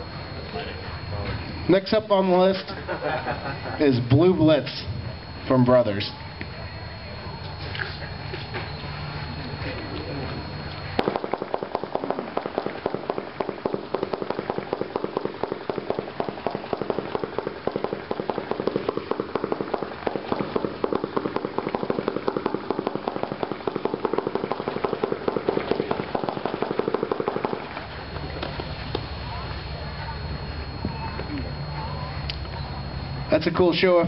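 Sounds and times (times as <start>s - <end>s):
firework cake rapid pops: 10.9s - 29.0s.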